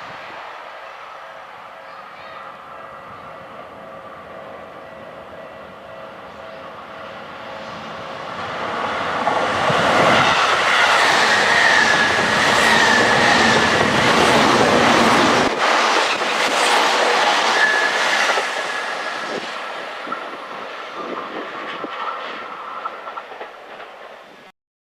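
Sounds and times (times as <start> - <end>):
train high whine: 0.0 - 24.5
train wheels clicking over rail joints: 8.6 - 24.3.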